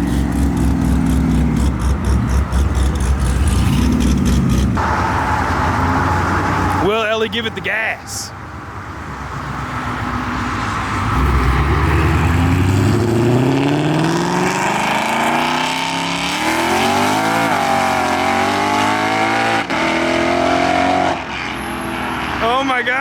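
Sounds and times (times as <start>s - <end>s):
car engine accelerating hard: 11.0s - 21.3s.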